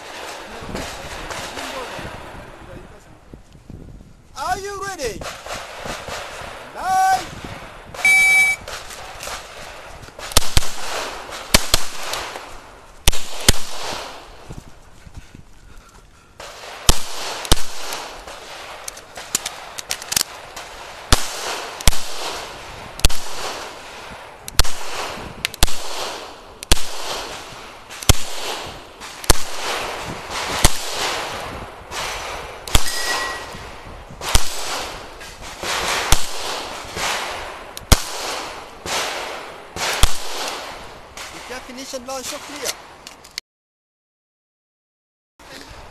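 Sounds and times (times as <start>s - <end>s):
pistol shots with echo: 16.4s - 41.4s.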